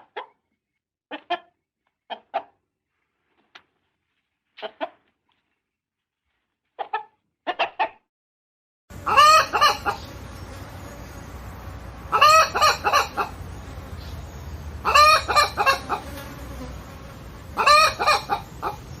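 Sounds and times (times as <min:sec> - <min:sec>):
hen calling: 0:09.0 - 0:10.3, 0:12.0 - 0:14.2, 0:14.8 - 0:16.0, 0:17.6 - 0:19.0.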